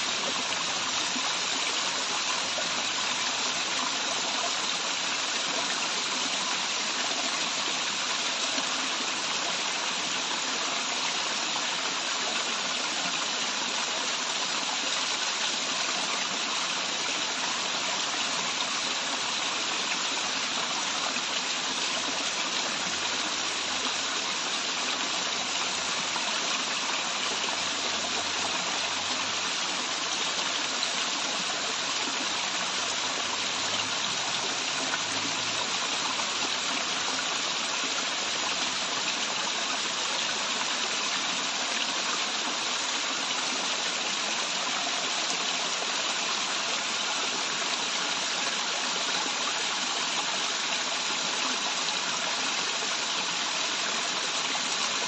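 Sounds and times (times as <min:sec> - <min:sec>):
waterfall rushing: 0:14.5 - 0:55.0.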